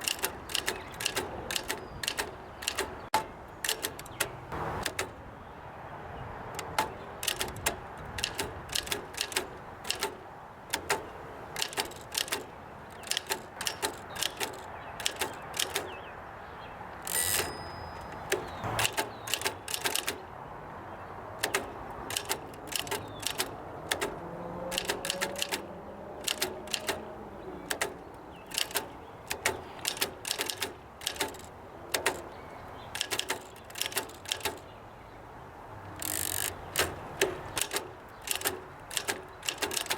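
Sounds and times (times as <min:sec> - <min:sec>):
typewriter clacking: 0:00.0 - 0:05.2, 0:06.6 - 0:16.0, 0:17.0 - 0:20.4, 0:21.3 - 0:32.3, 0:32.9 - 0:34.7, 0:36.0 - 0:39.9
typewriter bell ring: 0:17.1 - 0:20.1.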